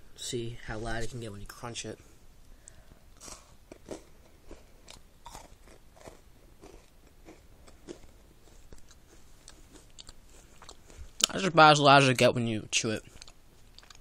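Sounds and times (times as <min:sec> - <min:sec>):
chocolate bar crunching: 0:03.2 - 0:11.4, 0:13.0 - 0:14.0.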